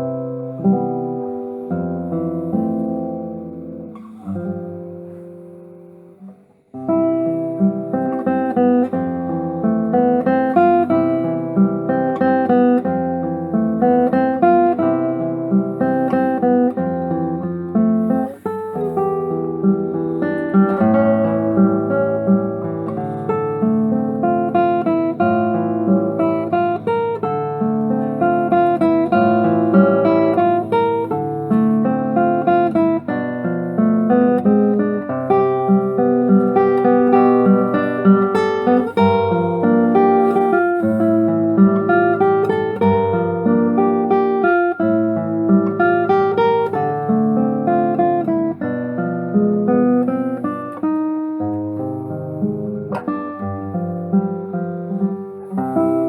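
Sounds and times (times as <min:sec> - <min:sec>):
solo acoustic guitar: 0:00.0 - 0:56.0.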